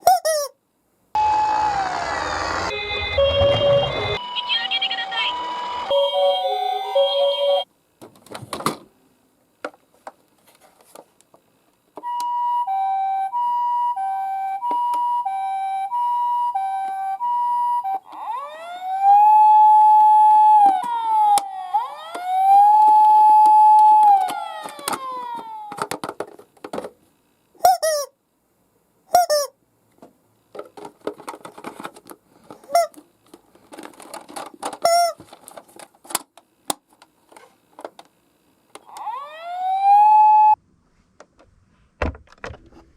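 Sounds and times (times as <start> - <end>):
short siren chirps: 1.2 - 7.6, 38.9 - 40.6
wailing siren: 1.2 - 7.6, 12.0 - 25.8, 38.8 - 40.6
two-tone hi-lo siren: 1.2 - 7.7, 12.0 - 25.7, 38.8 - 40.6
toy cars clicking and rattling: 23.8 - 26.8.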